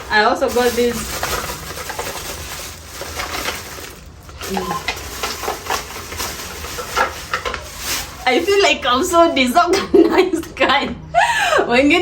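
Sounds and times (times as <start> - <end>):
packaging rustling and crinkling: 0.0 - 9.5.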